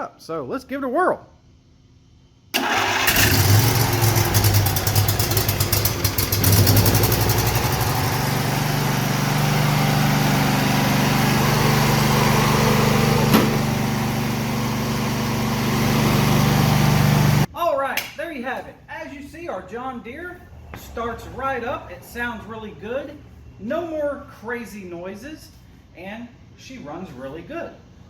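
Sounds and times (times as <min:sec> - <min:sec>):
electric starter cranking engine: 0:02.6 - 0:17.5
mower engine running: 0:02.6 - 0:17.5.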